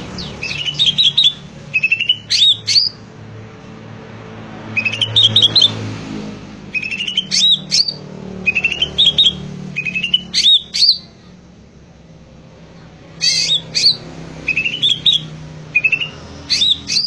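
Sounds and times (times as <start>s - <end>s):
bird singing whistled notes: 0.0s - 3.0s, 4.8s - 5.7s, 6.7s - 11.1s, 13.2s - 17.0s.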